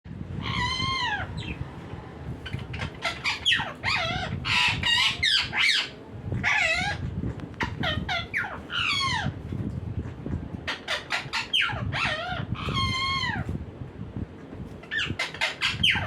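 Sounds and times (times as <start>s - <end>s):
parrot calling: 0.4s - 1.6s, 2.4s - 7.0s, 7.6s - 9.4s, 10.7s - 13.4s, 14.8s - 16.0s.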